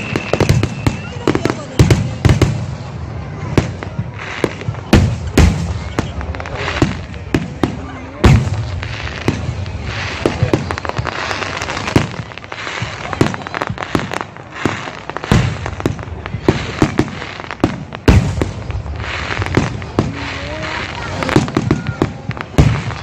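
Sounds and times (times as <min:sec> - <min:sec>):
fireworks bangs: 0:00.0 - 0:23.0
fireworks crackling: 0:00.0 - 0:23.0.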